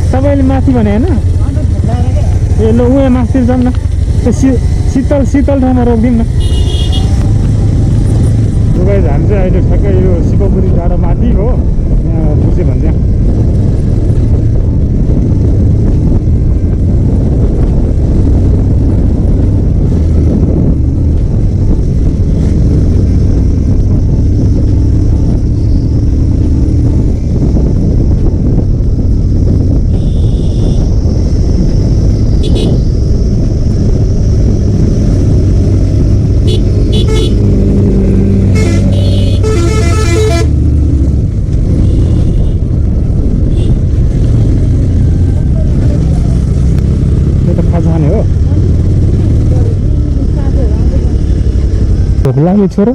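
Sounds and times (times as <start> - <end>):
motorcycle engine: 0.0 - 52.9
road noise: 0.0 - 52.9
wind rumble on microphone: 0.0 - 52.9
vehicle horn honking: 6.4 - 7.2, 29.9 - 30.9, 32.4 - 32.8, 36.5 - 37.4, 38.5 - 40.6, 41.8 - 42.6.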